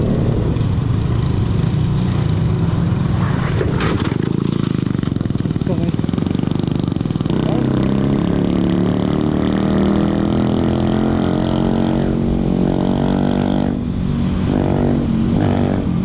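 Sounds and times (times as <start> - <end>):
scooter engine running: 0.0 - 8.9.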